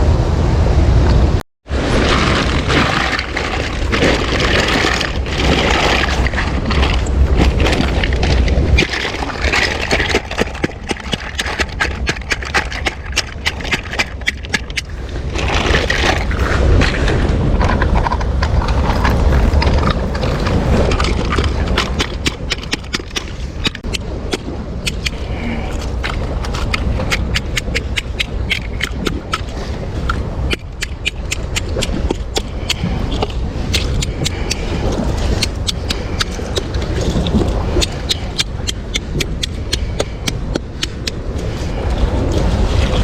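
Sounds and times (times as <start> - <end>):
wind buffeting microphone: 0.0 - 43.0.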